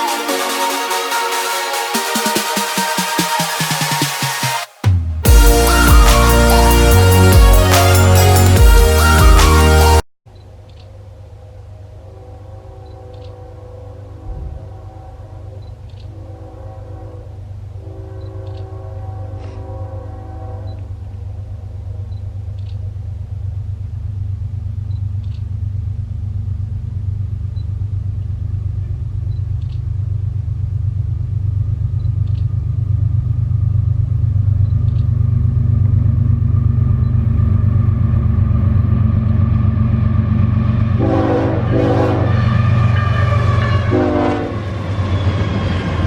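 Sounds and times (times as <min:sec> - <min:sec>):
train horn: 0:05.3 - 0:09.5, 0:11.4 - 0:22.2, 0:40.8 - 0:45.0
diesel locomotive engine rumble: 0:10.4 - 0:46.0.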